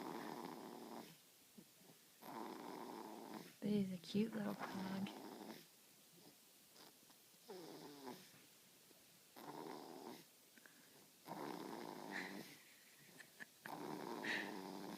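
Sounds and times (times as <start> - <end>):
baby snoring: 0.0 - 1.2, 2.2 - 3.6, 4.6 - 8.3, 9.4 - 10.3, 11.2 - 12.6, 13.7 - 14.9.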